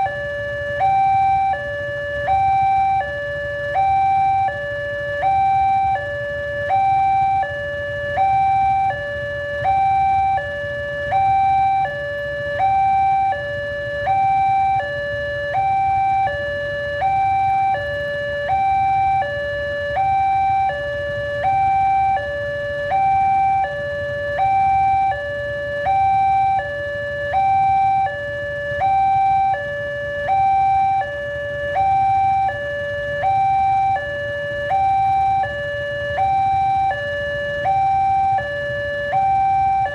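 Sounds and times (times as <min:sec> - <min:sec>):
two-tone crossing warning signal: 0:00.0 - 0:39.9.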